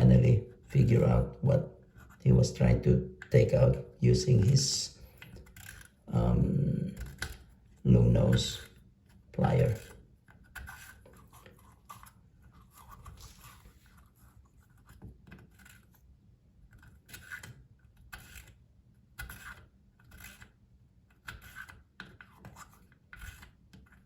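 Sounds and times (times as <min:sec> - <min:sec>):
pliers scraping and clicking: 0:05.2 - 0:06.0.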